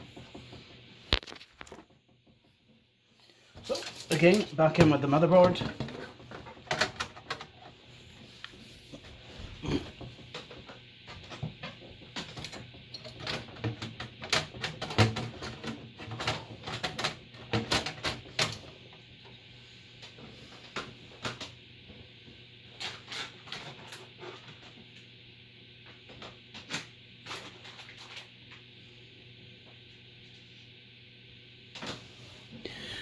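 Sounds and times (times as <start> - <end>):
clicks and knocks of computer parts: 0.1 - 2.0, 3.6 - 7.7, 10.3 - 18.7, 26.1 - 28.3.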